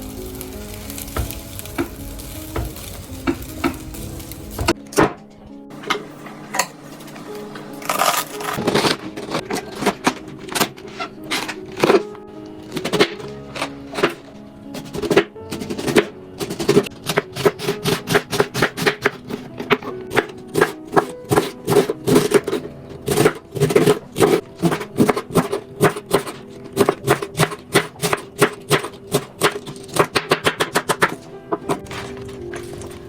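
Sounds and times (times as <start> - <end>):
background music: 0.0 - 33.0
knife chopping on cutting board: 14.8 - 31.8.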